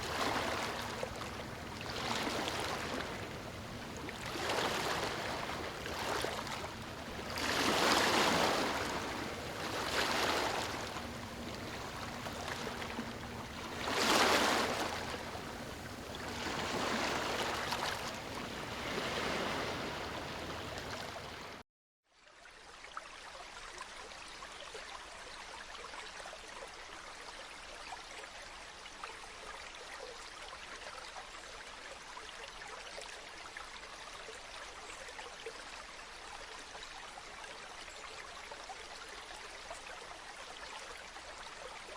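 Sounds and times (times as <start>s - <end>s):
small water waves washing in: 0.0s - 21.6s.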